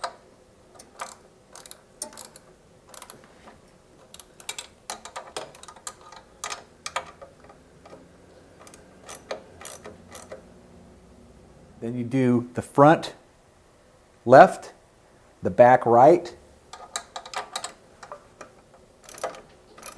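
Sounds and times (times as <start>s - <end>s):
socket ratchet clicking: 0.8s - 3.2s, 4.1s - 10.5s, 16.7s - 19.9s.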